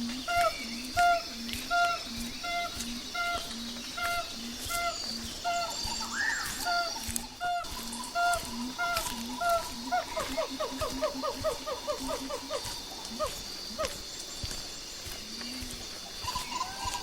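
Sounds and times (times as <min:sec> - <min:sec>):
high insect drone: 0:00.0 - 0:17.0.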